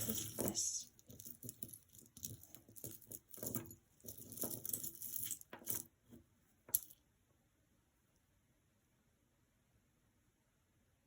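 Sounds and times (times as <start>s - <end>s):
jewelry clinking and rattling: 0.0s - 7.0s.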